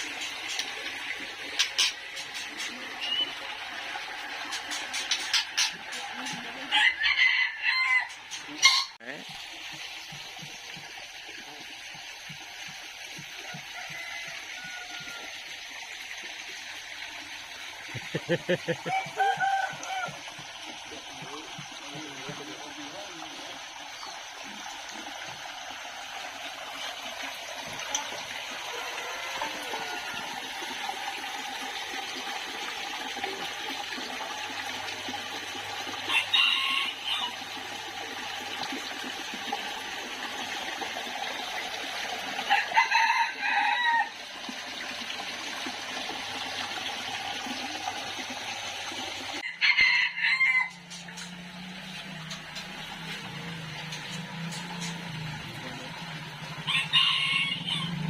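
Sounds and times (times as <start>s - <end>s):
rooster crowing: 6.7s - 8.2s, 13.5s - 15.3s, 18.7s - 20.2s, 36.1s - 37.4s, 42.4s - 44.2s, 49.4s - 50.9s, 56.6s - 58.0s.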